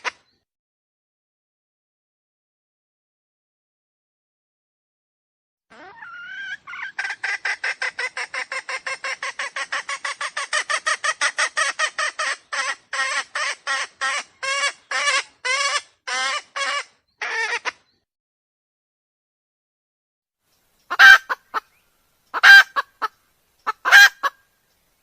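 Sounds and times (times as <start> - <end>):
wild chicken cackling: 5.7 - 17.9, 20.8 - 24.5.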